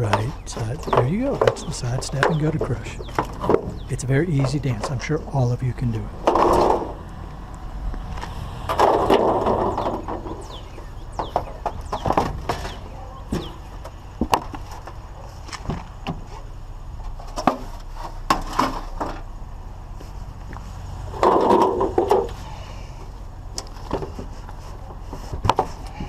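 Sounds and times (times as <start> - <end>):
scrap knocking and clattering: 0.0 - 5.4, 6.2 - 7.0, 8.7 - 16.4, 17.1 - 19.3, 21.2 - 22.4, 23.6 - 26.0
low steady hum: 0.0 - 26.0.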